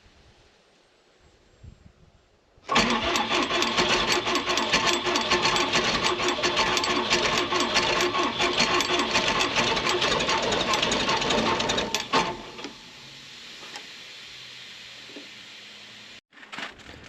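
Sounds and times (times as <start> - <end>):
starter cranking diesel engine: 2.7 - 12.8.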